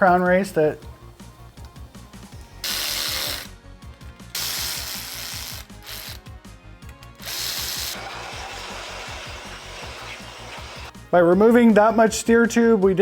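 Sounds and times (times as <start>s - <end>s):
background music with steady beat: 0.0s - 13.0s
tool work on bike fork: 2.6s - 3.5s.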